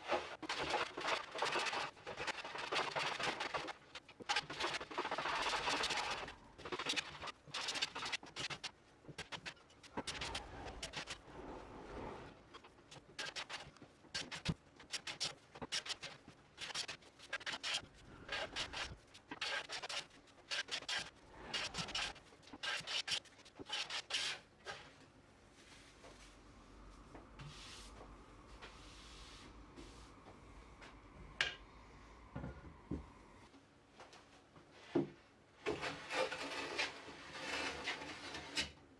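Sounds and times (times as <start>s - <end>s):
hand tool scraping wood: 0.0s - 24.8s, 35.6s - 38.8s.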